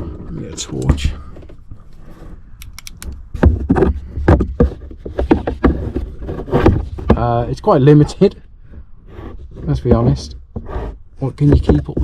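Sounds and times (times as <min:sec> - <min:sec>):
sharp clicks: 0:02.6 - 0:03.3
knocks of hard objects: 0:02.6 - 0:07.3, 0:11.4 - 0:12.0.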